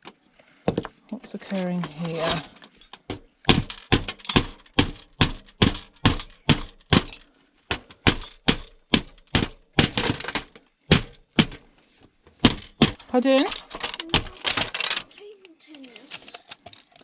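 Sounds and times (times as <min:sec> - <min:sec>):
plastic casing cracking: 0:12.4 - 0:17.0.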